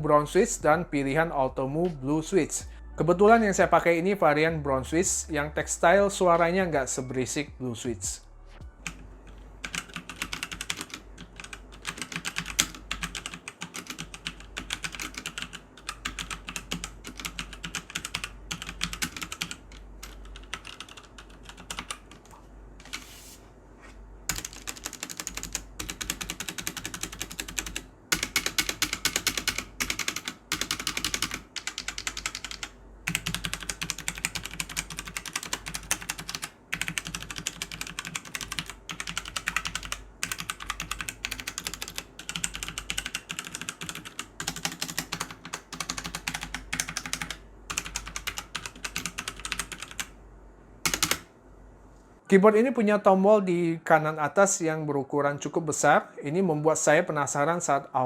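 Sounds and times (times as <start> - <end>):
mechanical keyboard typing: 9.6 - 22.3, 24.3 - 50.1, 50.9 - 51.3.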